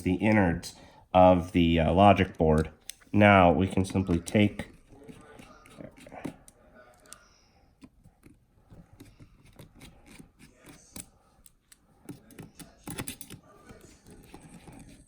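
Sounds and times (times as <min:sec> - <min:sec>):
small parts clicking and tapping: 0:03.8 - 0:15.0.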